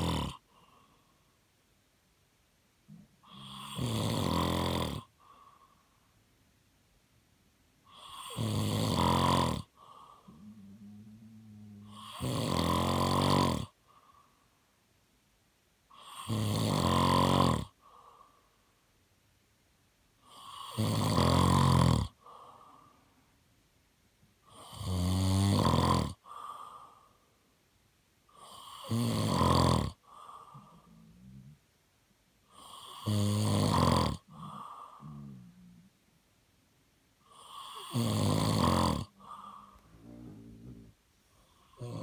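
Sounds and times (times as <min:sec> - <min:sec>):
man snoring: 0:00.0 - 0:00.5, 0:03.2 - 0:05.2, 0:07.9 - 0:13.8, 0:16.0 - 0:17.8, 0:20.3 - 0:22.2, 0:24.5 - 0:26.3, 0:28.4 - 0:31.6, 0:32.5 - 0:35.9, 0:37.3 - 0:42.0
soft breathing: 0:00.4 - 0:01.5, 0:05.1 - 0:06.3, 0:09.7 - 0:12.0, 0:13.8 - 0:14.8, 0:17.8 - 0:18.9, 0:22.2 - 0:23.4, 0:26.2 - 0:27.6, 0:30.0 - 0:31.8, 0:34.2 - 0:36.2, 0:38.7 - 0:42.0.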